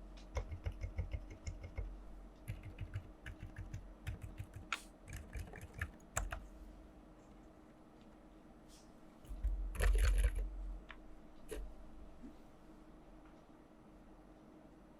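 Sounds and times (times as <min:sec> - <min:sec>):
muted keyboard keystrokes: 0:00.2 - 0:01.9, 0:02.5 - 0:06.4, 0:09.4 - 0:10.4
sharp keyboard clacks: 0:00.2 - 0:01.9, 0:02.5 - 0:06.4, 0:09.4 - 0:10.4.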